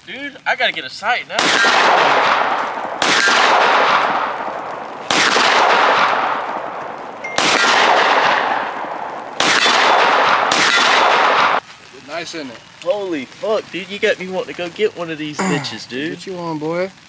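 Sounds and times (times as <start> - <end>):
gunshots with ringing tail: 1.4 - 11.6.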